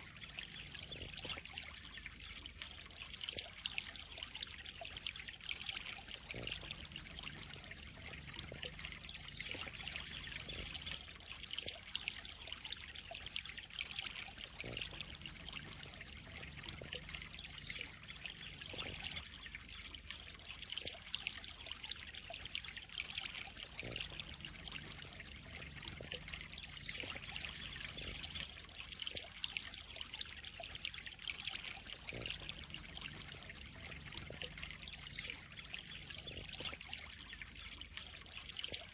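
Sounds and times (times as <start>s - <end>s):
small water splashes: 0.0s - 38.9s
water trickling in a pond: 0.0s - 38.9s.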